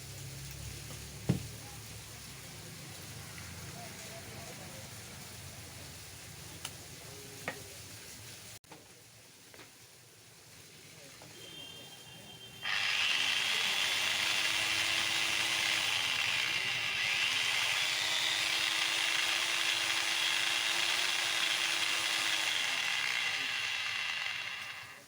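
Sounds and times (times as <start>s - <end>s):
angle grinder running: 12.6s - 25.0s.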